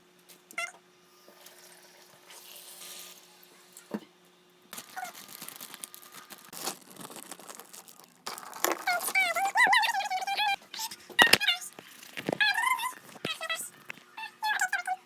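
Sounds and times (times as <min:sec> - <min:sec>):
plastic crinkling and rustling: 0:04.8 - 0:14.7.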